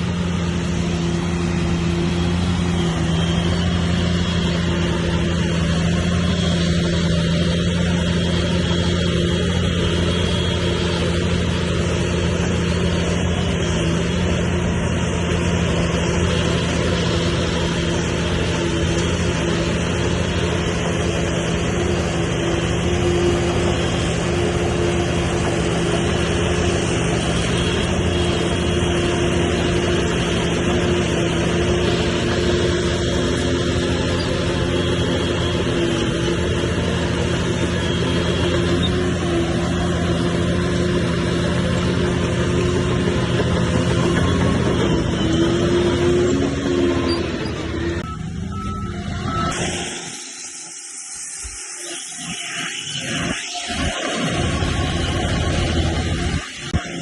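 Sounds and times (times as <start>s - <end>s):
diesel engine running steadily: 0.0s - 57.0s.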